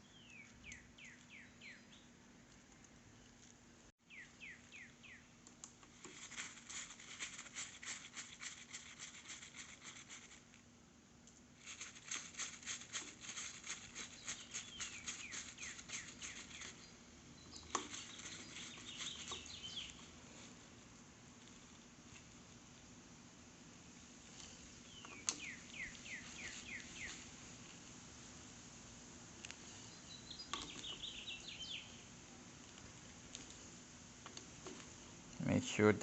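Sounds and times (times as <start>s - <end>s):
rapid scratchy clicking: 5.6s - 10.5s, 11.6s - 16.9s.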